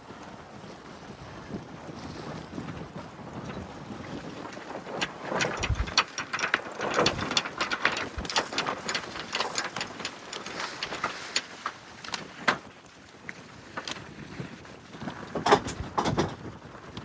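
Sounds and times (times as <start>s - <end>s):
deck gear clicking rapidly: 4.9s - 12.6s.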